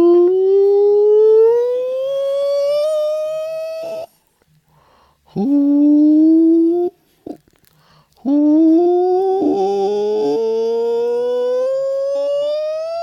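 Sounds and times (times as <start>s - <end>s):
man humming: 5.3s - 7.4s, 8.2s - 13.0s.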